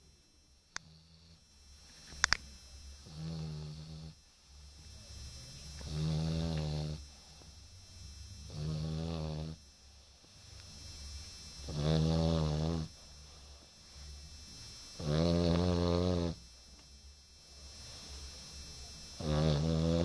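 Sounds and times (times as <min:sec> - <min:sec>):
slow snoring: 0:00.8 - 0:01.4, 0:03.0 - 0:04.2, 0:05.2 - 0:07.4, 0:08.4 - 0:09.7, 0:10.6 - 0:13.0, 0:15.0 - 0:16.5, 0:19.2 - 0:20.0.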